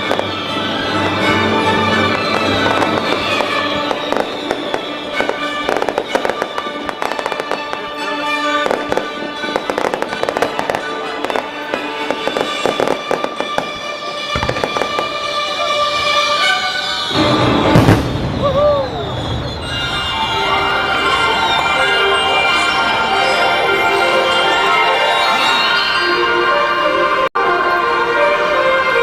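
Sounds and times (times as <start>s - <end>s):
fireworks crackling and popping: 0.0s - 16.7s
orchestral music: 0.0s - 29.0s.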